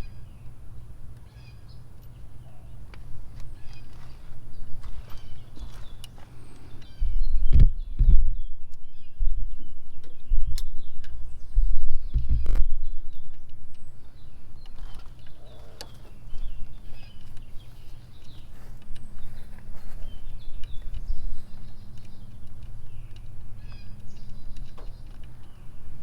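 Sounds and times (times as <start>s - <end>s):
small birds chirping: 0.0s - 26.0s
steady low rumble: 1.9s - 26.0s
sharp clicks: 14.6s - 25.6s.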